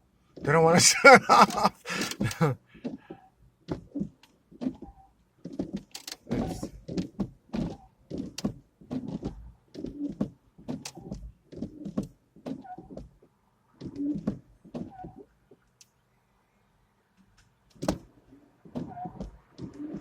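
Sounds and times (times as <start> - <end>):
wiper blades thunking: 0.4 - 13.2.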